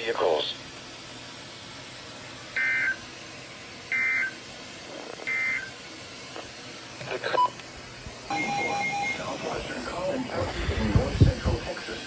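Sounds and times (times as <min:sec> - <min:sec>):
two-tone digital bursts: 0:02.6 - 0:03.0, 0:03.9 - 0:04.4, 0:05.3 - 0:05.7, 0:08.3 - 0:09.6.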